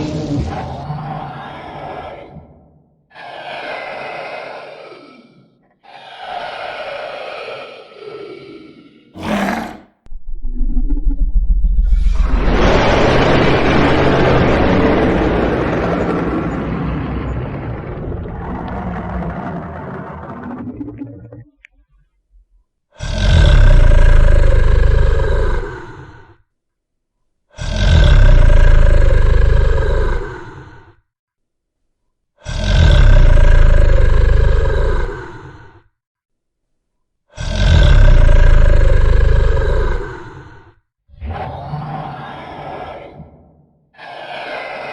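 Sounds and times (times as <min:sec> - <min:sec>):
deep dragon roars: 0:03.2 - 0:09.9, 0:23.0 - 0:26.2, 0:27.6 - 0:30.9, 0:32.4 - 0:35.8, 0:37.4 - 0:44.9
dragon roar sound effect: 0:09.2 - 0:09.9.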